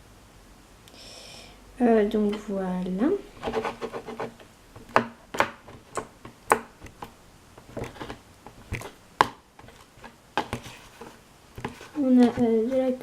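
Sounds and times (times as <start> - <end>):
fork scraping a container: 3.4 - 4.4, 7.7 - 9.0, 9.6 - 12.8.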